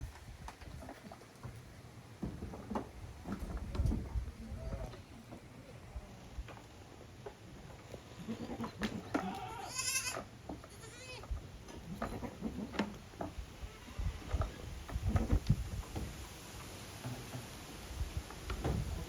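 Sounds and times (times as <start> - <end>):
goats bleating: 8.1 - 11.3.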